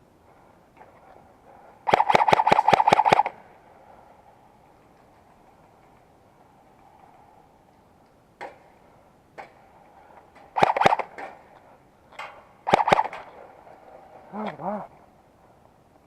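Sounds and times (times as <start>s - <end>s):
airsoft gun shots: 1.9s - 3.4s, 10.6s - 11.3s, 12.7s - 13.3s
person speaking: 14.3s - 14.9s.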